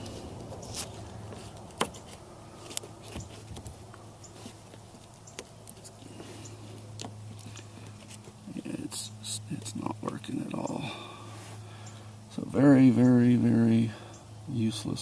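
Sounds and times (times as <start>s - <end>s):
tape clicks and rustles: 0.0s - 10.3s
steady low hum: 0.0s - 15.0s.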